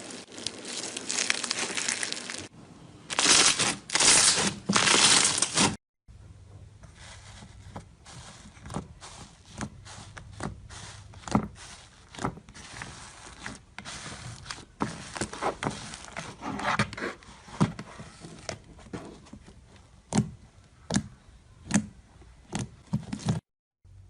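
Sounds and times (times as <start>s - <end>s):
slime squishing and crackling: 0.0s - 2.5s, 3.1s - 5.8s, 8.1s - 16.8s.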